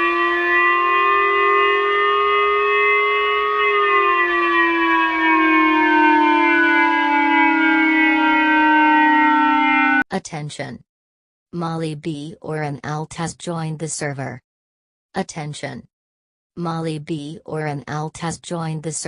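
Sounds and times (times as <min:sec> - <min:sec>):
alarm tone chord: 0:00.0 - 0:10.0.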